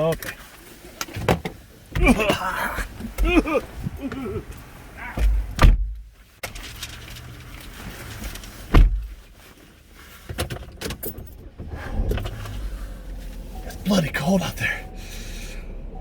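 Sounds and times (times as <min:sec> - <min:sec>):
car door shutting: 0:01.1 - 0:06.7, 0:08.6 - 0:09.2, 0:10.3 - 0:13.9
small clicks and rustles: 0:06.0 - 0:13.6.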